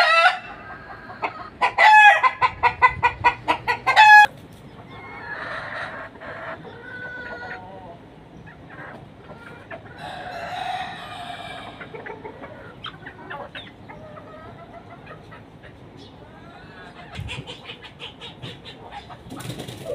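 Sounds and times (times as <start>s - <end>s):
rooster crowing: 0.0s - 0.6s, 1.6s - 2.4s, 3.8s - 4.3s, 10.0s - 11.9s
chickens clucking and squawking: 0.0s - 19.9s.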